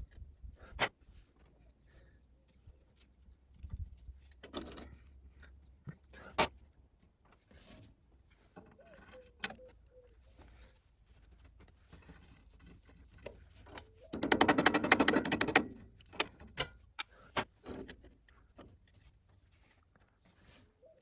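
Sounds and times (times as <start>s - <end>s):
rapid metal strikes rattling: 14.2s - 15.8s
sharp metal knocks: 14.2s - 15.8s.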